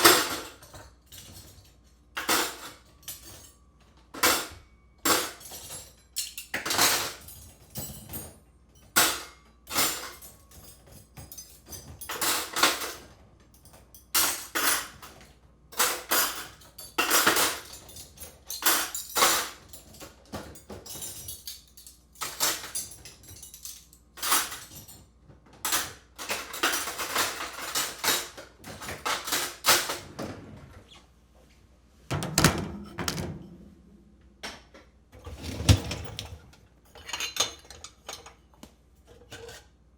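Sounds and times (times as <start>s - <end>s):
dishes and cutlery clinking: 35.3s - 39.7s.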